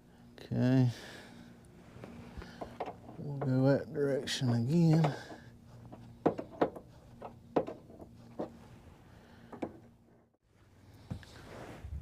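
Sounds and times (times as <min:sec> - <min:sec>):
faint steady hum: 0:00.0 - 0:12.0
knocks on metal parts: 0:06.2 - 0:08.0.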